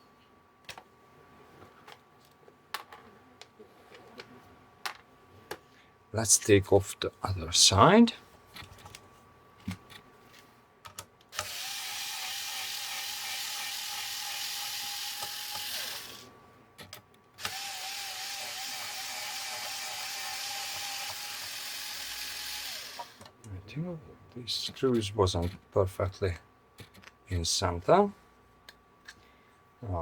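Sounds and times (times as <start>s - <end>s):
electric screwdriver motor running: 11.4s - 16.2s, 17.4s - 23.2s.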